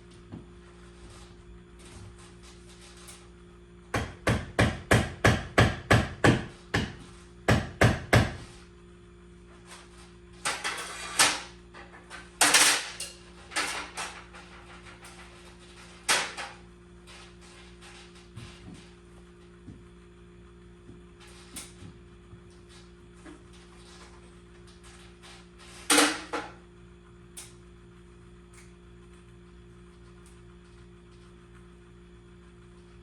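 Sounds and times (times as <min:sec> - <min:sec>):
hammer strikes: 0:04.0 - 0:08.4.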